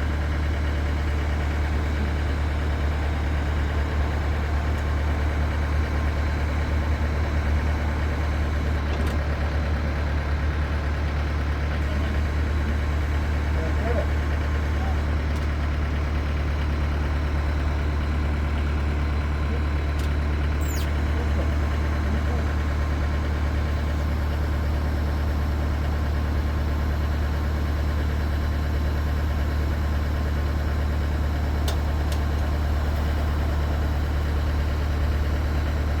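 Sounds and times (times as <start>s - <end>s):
faint high squeaks: 20.6s - 21.0s.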